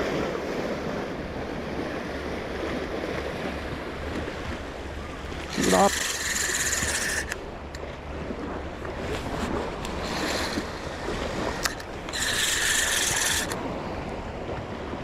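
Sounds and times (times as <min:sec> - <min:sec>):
sea washing: 0:00.0 - 0:15.0
fishing reel gears whining: 0:05.3 - 0:07.4, 0:09.9 - 0:13.6
sharp reel clicks: 0:05.5 - 0:07.8, 0:09.8 - 0:10.8, 0:11.5 - 0:13.6.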